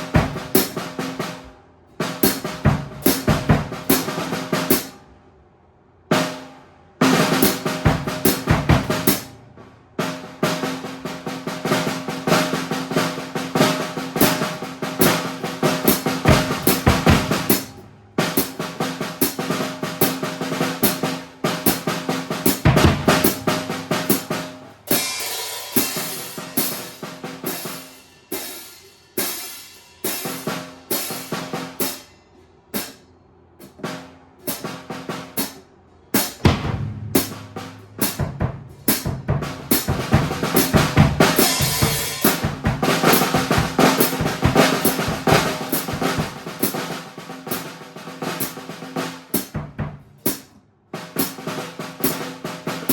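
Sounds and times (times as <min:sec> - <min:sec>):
drum kit playing: 0:00.0 - 0:04.9, 0:06.1 - 0:32.1, 0:32.7 - 0:33.0, 0:33.6 - 0:52.9
cymbal wash: 0:23.2 - 0:32.9, 0:40.5 - 0:43.2.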